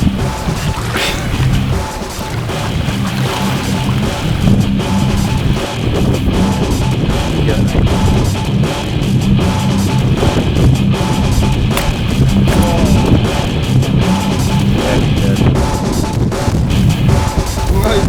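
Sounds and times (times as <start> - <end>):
drum kit: 11.8 - 13.7.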